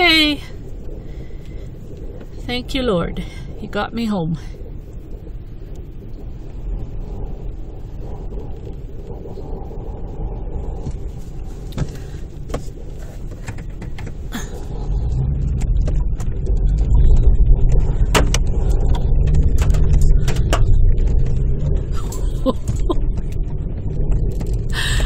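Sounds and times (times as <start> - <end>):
car engine labouring in snow: 10.8 - 25.0
sharp clicks and knocks: 11.7 - 14.3, 15.4 - 24.8.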